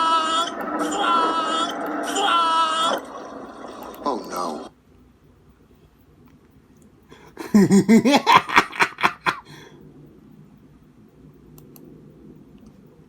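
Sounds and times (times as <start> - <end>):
warbling vocal pitch swoops: 0.0 - 4.7.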